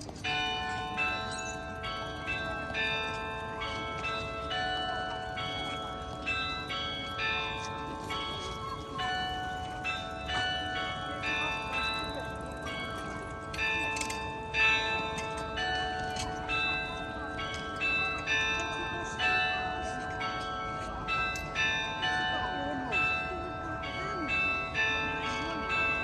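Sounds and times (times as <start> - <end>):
church bells ringing: 0.0 - 26.0.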